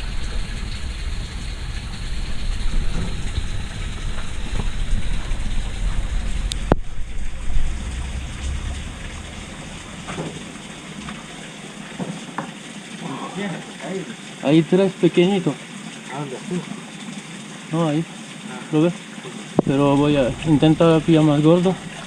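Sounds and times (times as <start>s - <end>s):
wind rumbling on microphone: 0.0s - 12.0s, 19.6s - 22.0s
water splashing and trickling: 0.0s - 22.0s.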